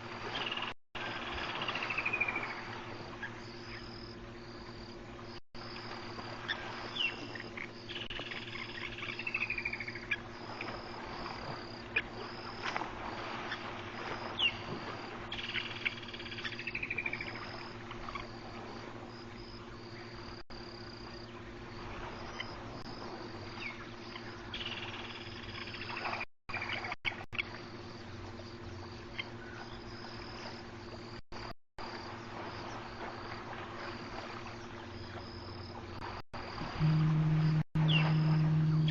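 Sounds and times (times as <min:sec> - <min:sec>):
insects and frogs chorus: 0:00.1 - 0:38.9
high-pitched pulsing insect call: 0:05.6 - 0:12.7, 0:15.3 - 0:21.3, 0:22.1 - 0:26.2, 0:36.6 - 0:38.9
falling trill: 0:36.8 - 0:38.9.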